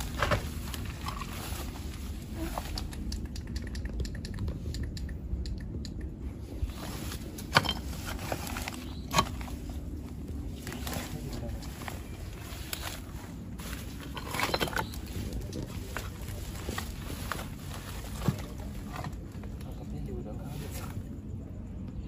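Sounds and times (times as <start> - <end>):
footsteps through dry undergrowth: 0.0 - 2.8, 6.5 - 19.6
steady low rumble: 0.0 - 22.0.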